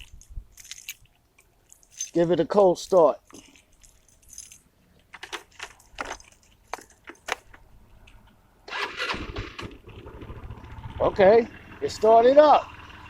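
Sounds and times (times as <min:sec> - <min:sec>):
scooter engine running: 0:08.7 - 0:13.0
scooter starter cranking: 0:08.7 - 0:13.0.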